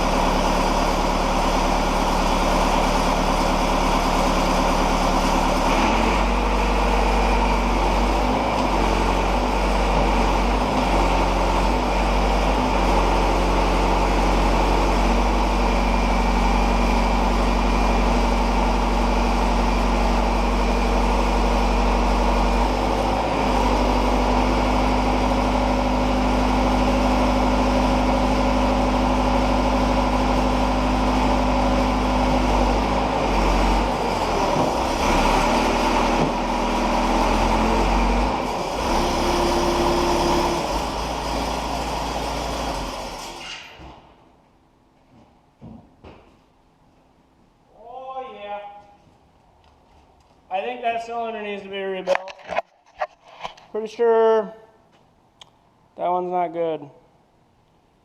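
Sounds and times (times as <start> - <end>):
diesel engine running under load: 0.0 - 44.3.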